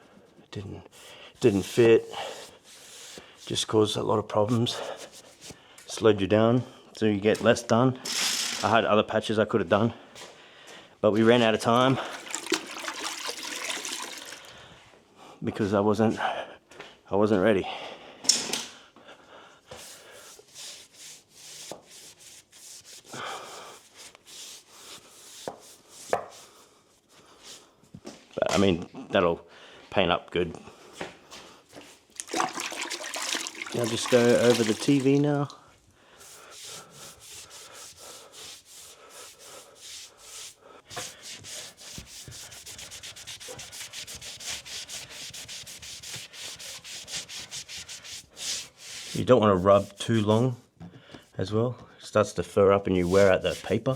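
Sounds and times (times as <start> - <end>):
sandpaper scraping drywall patch: 1.0 - 3.7, 4.5 - 5.6, 19.7 - 26.6, 36.1 - 50.5, 52.9 - 53.9.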